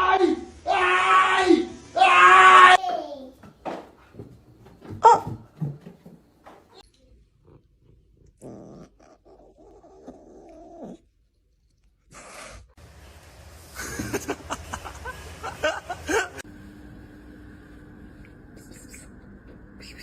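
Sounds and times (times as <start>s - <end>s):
sharp knocks and clatter: 2.9s - 6.8s.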